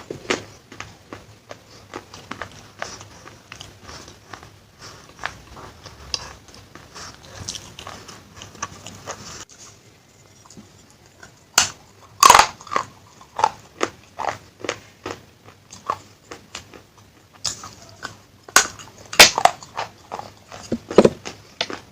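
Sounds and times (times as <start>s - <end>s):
crunching of clay being chewed: 0.0s - 9.5s, 10.3s - 21.9s.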